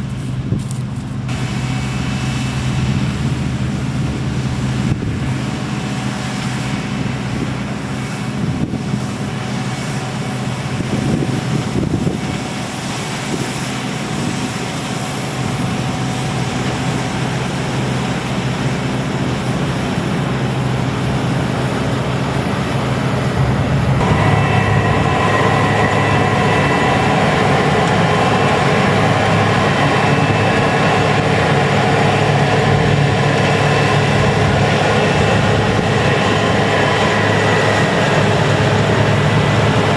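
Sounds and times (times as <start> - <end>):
diesel harvest machinery running: 0.0 - 39.9
steady whine: 0.0 - 39.9.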